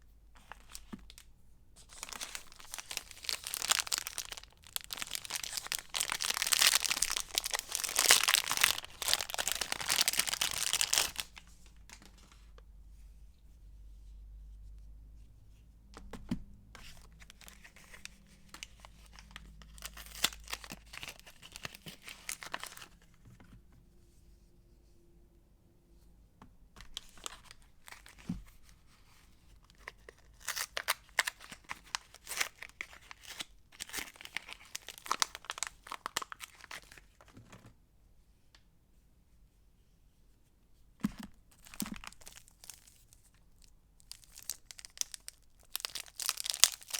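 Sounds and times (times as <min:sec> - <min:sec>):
packaging tearing and crinkling: 0:01.9 - 0:11.4, 0:17.2 - 0:22.9, 0:29.8 - 0:37.0, 0:41.6 - 0:46.9.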